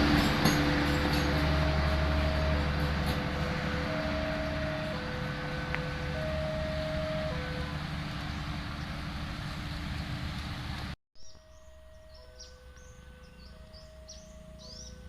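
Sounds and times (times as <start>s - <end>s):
two-note alternating tone: 0.0s - 7.9s
train rumbling past on track: 0.0s - 11.0s
birds chirping: 11.2s - 15.0s.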